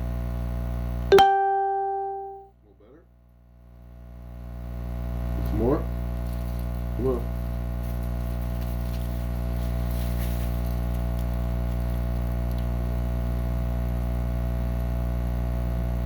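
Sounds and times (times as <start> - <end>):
electrical mains hum: 3.7 - 16.0.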